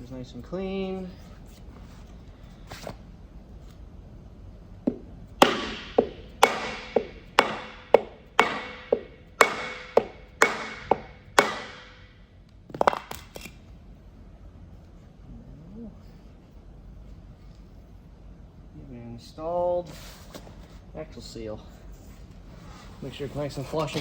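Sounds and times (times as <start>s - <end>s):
hammer blows on wood block: 4.9s - 12.1s.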